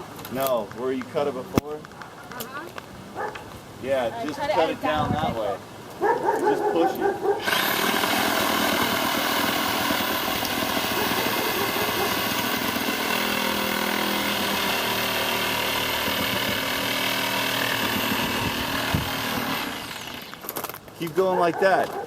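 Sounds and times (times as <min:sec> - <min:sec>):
saw cutting through tree trunk: 0:06.8 - 0:20.5.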